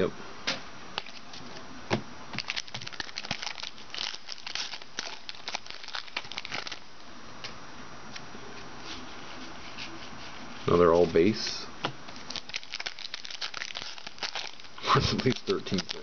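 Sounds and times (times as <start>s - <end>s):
card pack wrapper crinkling: 2.4s - 6.9s, 12.1s - 16.0s.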